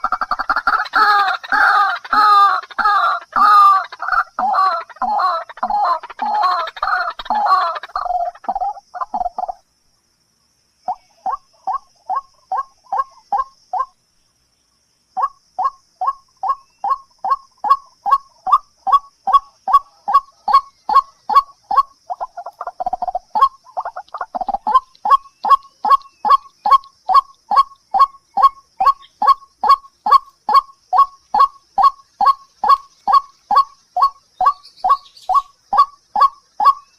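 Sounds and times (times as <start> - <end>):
lower harsh bird calls: 15.2 - 36.9.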